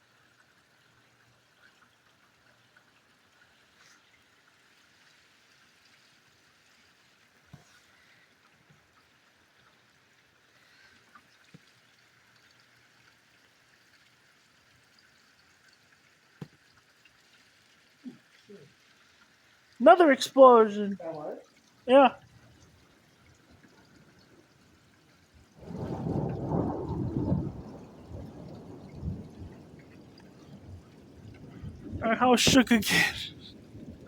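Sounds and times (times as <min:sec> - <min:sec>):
rain hissing: 0:19.8 - 0:22.8, 0:25.6 - 0:34.0.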